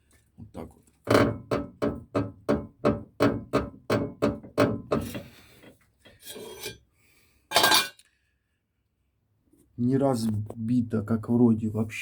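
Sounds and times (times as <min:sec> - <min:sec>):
ball joint creaking: 0:01.0 - 0:05.3.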